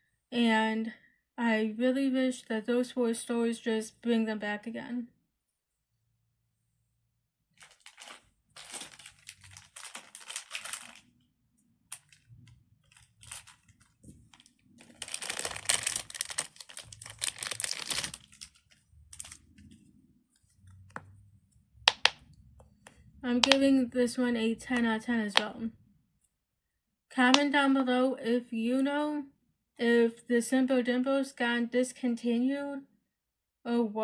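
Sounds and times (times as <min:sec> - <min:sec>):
crinkly plastic rustling: 0:07.5 - 0:11.2, 0:11.9 - 0:19.8.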